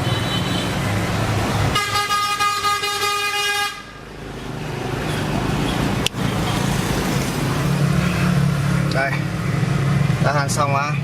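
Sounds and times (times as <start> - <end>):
vehicle horn: 0.0 - 0.8, 1.7 - 4.0.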